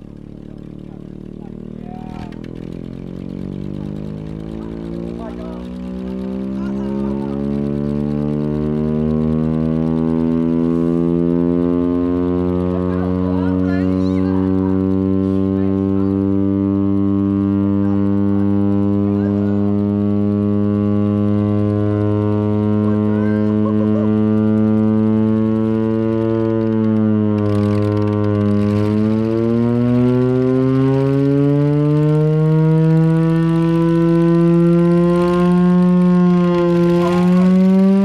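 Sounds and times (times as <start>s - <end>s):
mechanical air raid siren: 1.5s - 38.0s.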